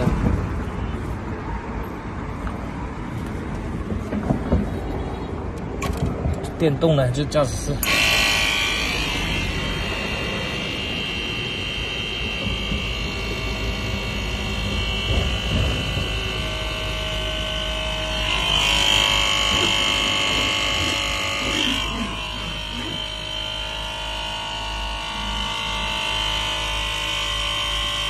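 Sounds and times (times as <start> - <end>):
electric pump motor whining: 7.8 - 28.0.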